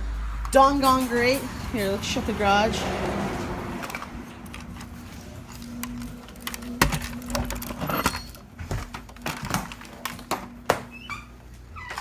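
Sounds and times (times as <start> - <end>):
garage door motor hum: 2.9 - 12.0
clicks and knocks of moving door: 5.9 - 11.2.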